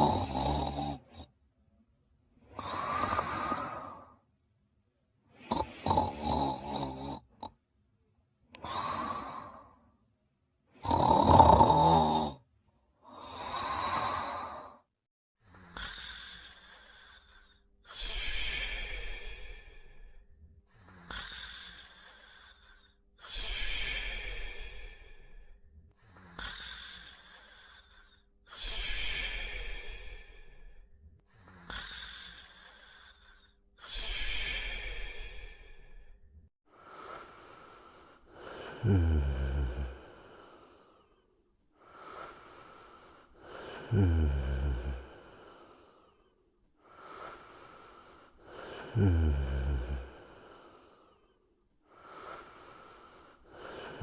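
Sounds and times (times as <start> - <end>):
cartoon character snoring: 0.0 - 1.3, 2.5 - 4.2, 5.3 - 7.6, 10.7 - 12.4, 15.4 - 20.0, 20.7 - 25.3, 26.0 - 30.6, 31.3 - 36.0, 36.8 - 40.8, 41.8 - 45.9, 46.9 - 51.0, 51.9 - 54.0.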